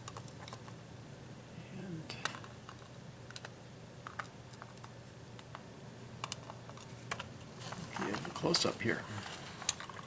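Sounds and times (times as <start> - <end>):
small metal parts clicking and tapping: 2.2 - 5.6, 6.2 - 7.3.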